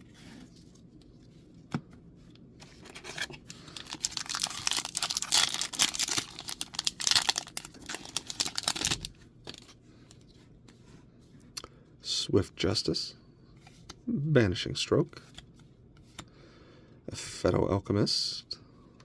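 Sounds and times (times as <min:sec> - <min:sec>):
foil wrapper tearing and crinkling: 0:03.2 - 0:09.6.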